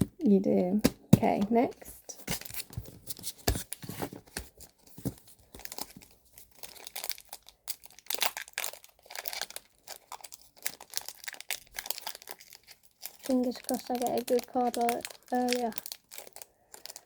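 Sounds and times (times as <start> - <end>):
foil pack crinkling and tearing: 5.0 - 17.0.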